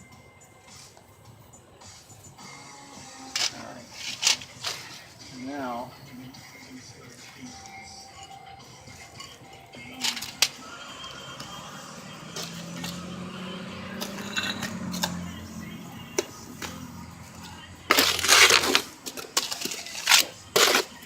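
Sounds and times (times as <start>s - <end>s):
loud stone scrape: 13.8s - 15.2s, 17.9s - 21.0s.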